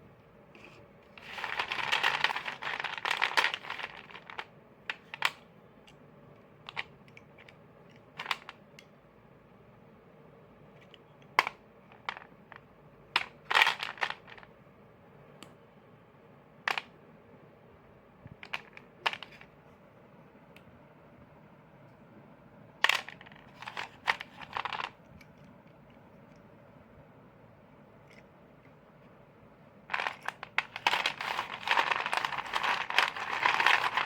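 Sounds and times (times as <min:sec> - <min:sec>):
crisp crunching: 0:29.9 - 0:34.0.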